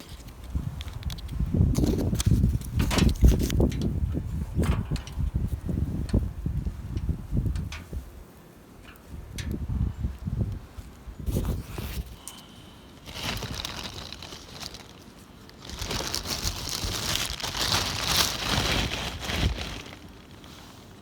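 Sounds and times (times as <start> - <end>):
material crinkling and rustling: 13.0 - 21.0.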